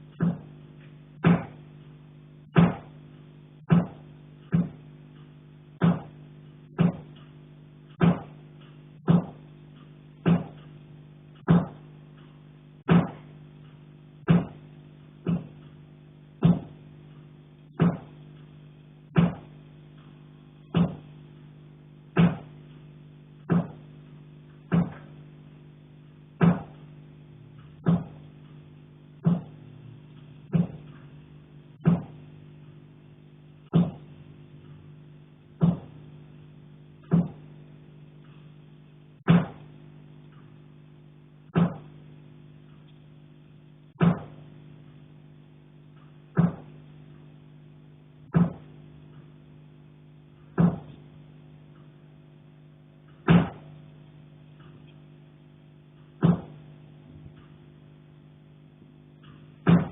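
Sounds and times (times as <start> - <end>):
knocking on a pipe: 3.7 - 4.8, 5.8 - 6.1, 6.8 - 7.1, 9.1 - 9.4, 11.5 - 11.8, 14.3 - 14.6, 16.4 - 16.7, 33.7 - 34.0, 35.6 - 35.9, 37.1 - 37.4, 39.3 - 39.6, 41.6 - 41.9, 46.4 - 46.7.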